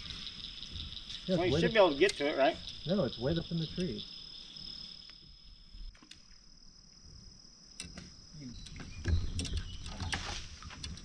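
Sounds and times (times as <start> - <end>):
high-pitched insects buzzing: 0.0 - 11.0
light clicks and knocks: 7.8 - 11.0.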